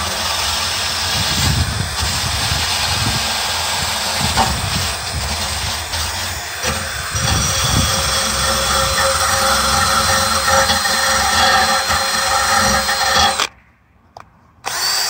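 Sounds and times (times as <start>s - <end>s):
drill wire brush scrubbing metal: 0.0s - 13.5s.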